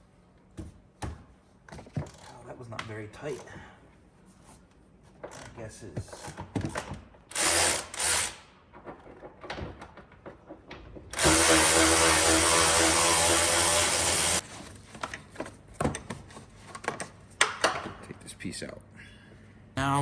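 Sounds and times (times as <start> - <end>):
power drill running: 7.3 - 8.4, 11.2 - 14.4.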